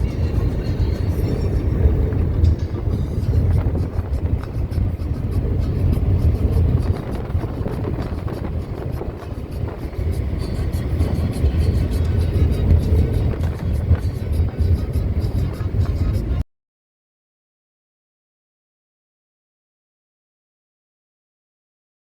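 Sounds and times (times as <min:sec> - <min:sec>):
low engine drone: 0:00.0 - 0:16.4
rushing buffeting noise: 0:00.0 - 0:16.4.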